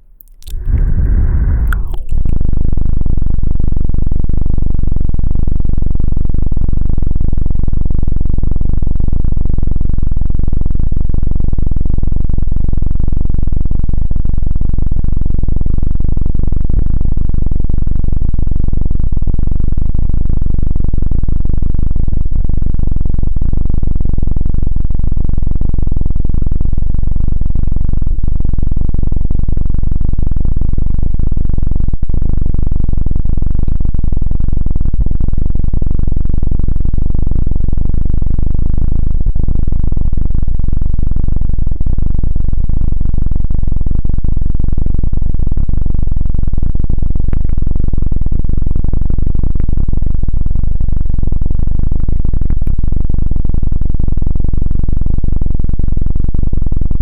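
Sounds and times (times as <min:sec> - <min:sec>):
distorted helicopter rotor rumble: 0:00.0 - 0:57.0.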